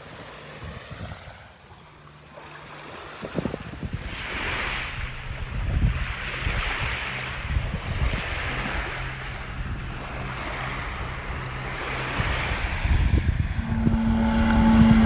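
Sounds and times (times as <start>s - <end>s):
small waves breaking on sand: 0.0s - 13.1s
wind buffeting microphone: 3.2s - 15.0s.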